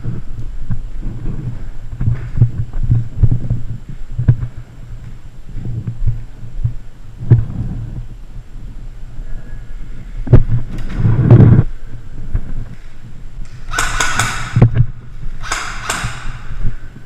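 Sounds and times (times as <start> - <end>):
sharp clicks: 13.4 - 14.8, 15.4 - 16.4
gear knocking against microphone: 13.4 - 16.5.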